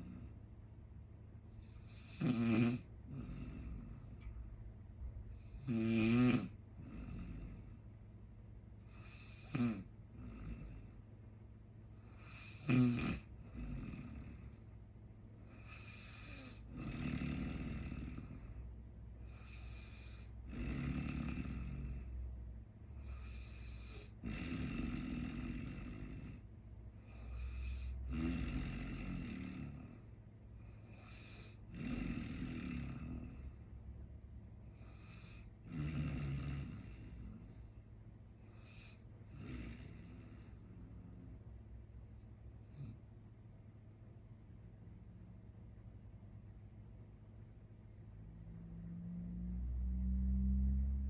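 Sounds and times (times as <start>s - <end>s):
man snoring: 0.0s - 0.4s, 1.5s - 4.4s, 5.3s - 7.8s, 8.8s - 11.0s, 12.0s - 14.7s, 15.4s - 33.7s, 34.7s - 37.8s, 38.4s - 41.4s.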